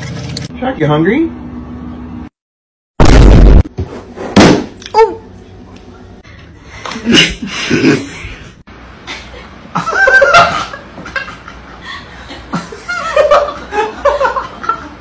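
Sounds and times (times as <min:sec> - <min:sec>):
people laughing: 0:09.1 - 0:15.0.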